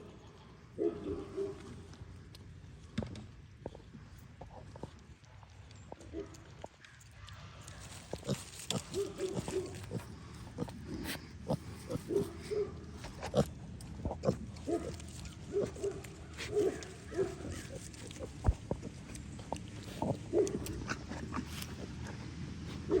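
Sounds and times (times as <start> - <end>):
piglets grunting: 8.0 - 23.0.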